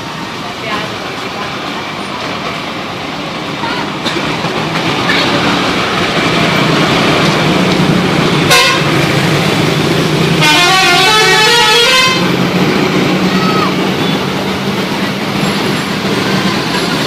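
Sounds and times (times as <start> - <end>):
engine rumble: 0.0 - 17.0
musical air horn: 8.5 - 8.9, 10.4 - 12.3
loud horn blast: 8.5 - 9.0, 10.4 - 12.4.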